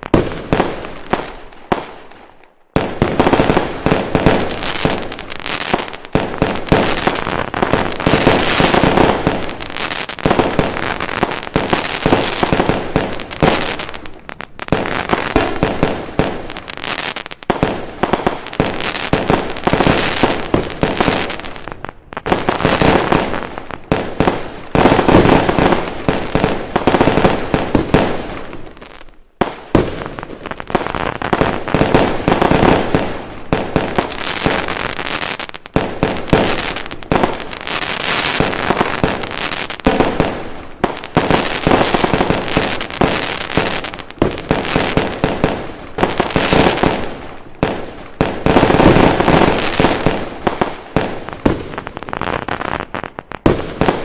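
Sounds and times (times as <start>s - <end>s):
fireworks bangs and crackles: 0.0s - 54.0s.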